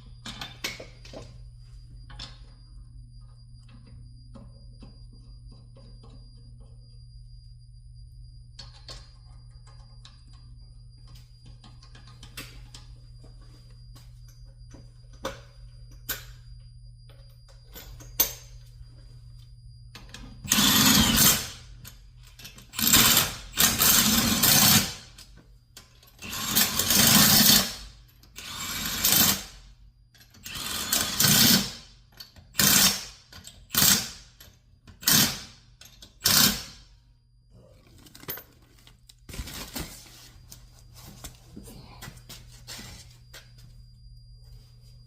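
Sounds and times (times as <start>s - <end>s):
low hum: 0.0s - 23.6s, 36.8s - 45.0s
impact wrench bursts: 20.5s - 21.6s, 30.4s - 31.8s, 32.6s - 34.3s, 36.2s - 36.8s.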